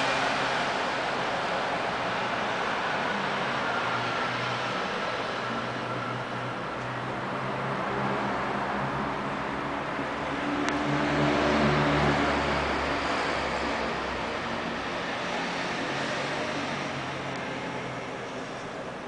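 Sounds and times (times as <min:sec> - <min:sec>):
road noise with engine hum: 0:00.0 - 0:19.0
motor vehicle passing: 0:07.9 - 0:18.0.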